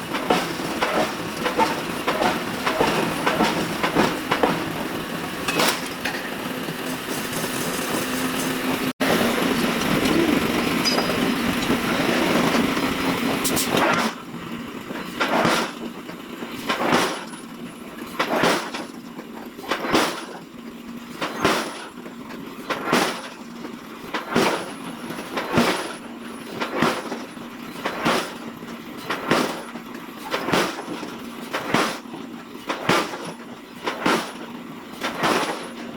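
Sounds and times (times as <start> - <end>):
continuous machine noise: 0.0 - 35.9
forging hammer striking steel: 0.1 - 6.4, 9.1 - 12.9.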